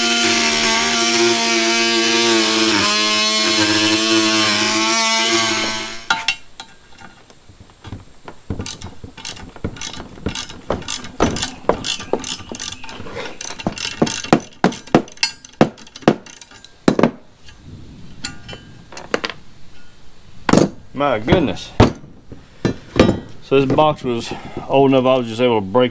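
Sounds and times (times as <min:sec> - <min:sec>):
hand tools clicking on metal: 0:06.1 - 0:17.6.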